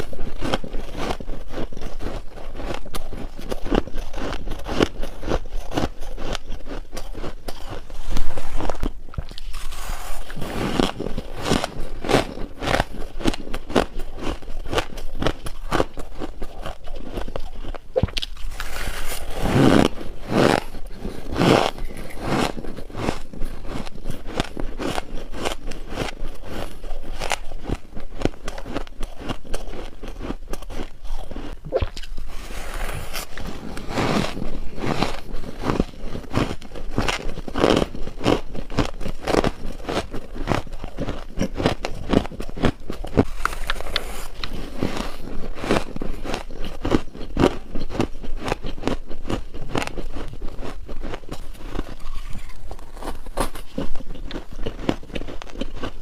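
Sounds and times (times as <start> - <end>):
crunching of hard ice: 0.0 - 56.0.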